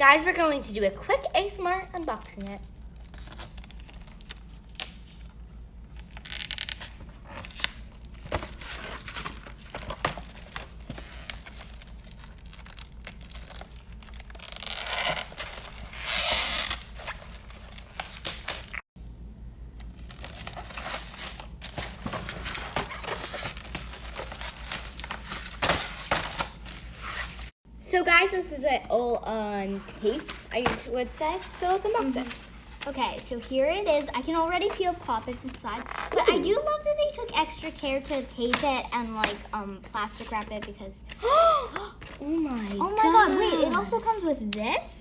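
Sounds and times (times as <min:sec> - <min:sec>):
plastic wrap crinkling: 0:00.3 - 0:18.8, 0:19.9 - 0:25.6
tape peeling and ripping: 0:02.9 - 0:05.3, 0:05.9 - 0:08.1, 0:10.2 - 0:18.8.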